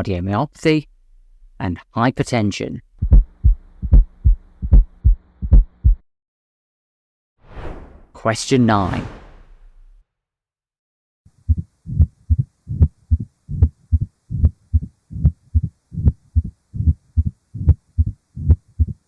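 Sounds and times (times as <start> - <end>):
heartbeat with opening snap: 3.0 - 6.0, 11.5 - 19.0
low rumbling heart murmur: 3.0 - 6.0, 11.4 - 19.0.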